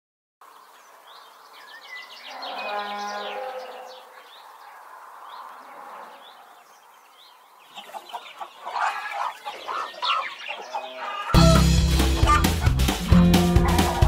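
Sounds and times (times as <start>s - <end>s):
chickens clucking: 4.0s - 14.0s.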